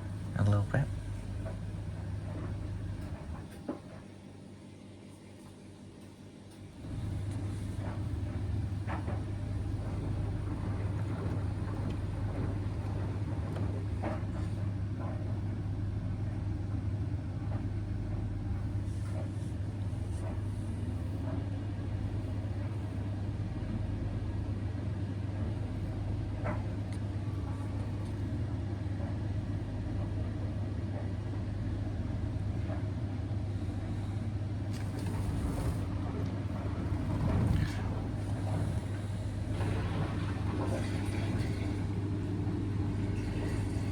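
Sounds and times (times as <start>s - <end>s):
tumble dryer rumble: 0.0s - 4.1s, 6.6s - 43.9s
drain pump humming: 6.8s - 43.9s.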